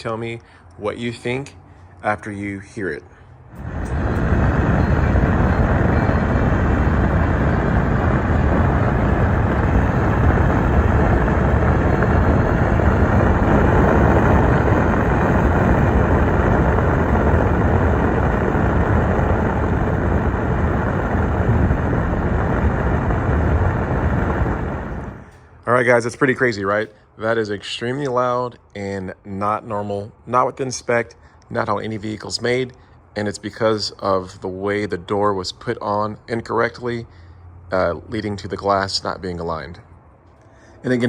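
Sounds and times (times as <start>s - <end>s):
wind rush inside car cabin: 3.5s - 25.4s.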